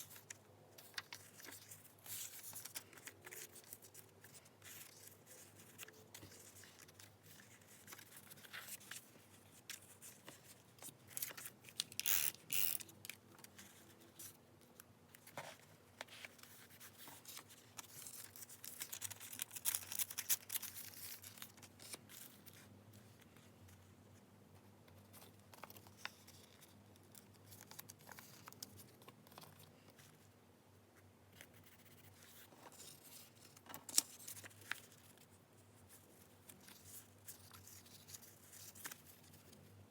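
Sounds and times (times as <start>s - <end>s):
paper rustling: 0.0s - 12.0s.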